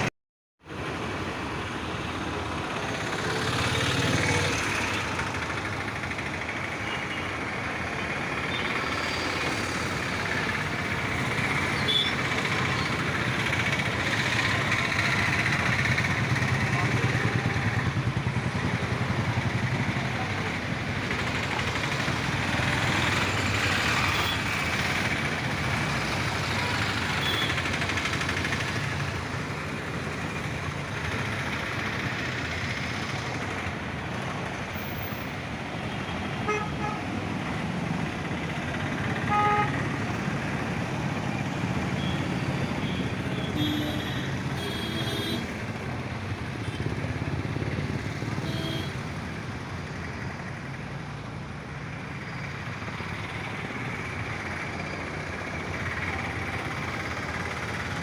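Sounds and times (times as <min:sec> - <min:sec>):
highway traffic noise: 0:00.0 - 0:58.0
road roller diesel engine running: 0:00.7 - 0:58.0
vehicle horn toots: 0:36.4 - 0:37.0, 0:39.3 - 0:39.8, 0:42.8 - 0:45.5, 0:48.4 - 0:49.0.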